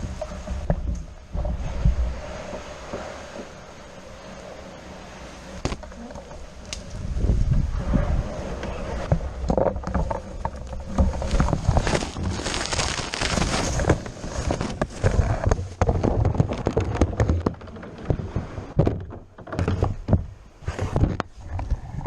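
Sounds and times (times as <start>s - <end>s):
plastic kayak knocks and thunks: 0.0s - 3.5s, 5.6s - 7.7s, 8.6s - 12.5s, 13.6s - 21.7s
wind rumble on microphone: 0.0s - 22.0s.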